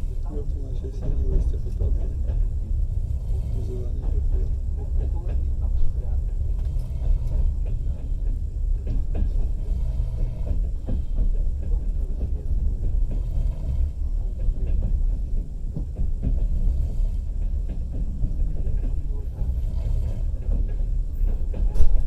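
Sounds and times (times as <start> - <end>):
train rumble: 0.0 - 22.0
wheels clacking over rails: 0.0 - 22.0.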